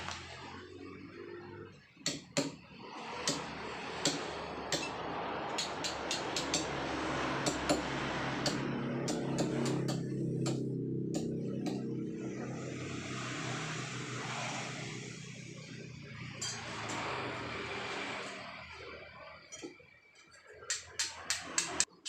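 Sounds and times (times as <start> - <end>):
steady hiss: 12.4 - 18.6.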